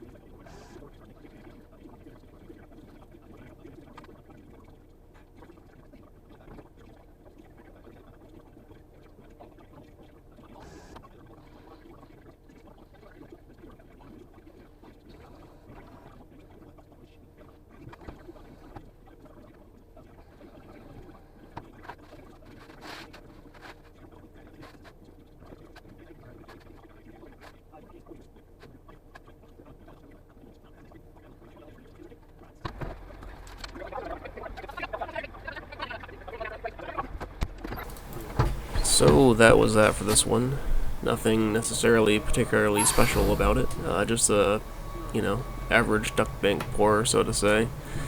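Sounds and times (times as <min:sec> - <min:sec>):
diesel engine running: 0:37.8 - 0:48.0.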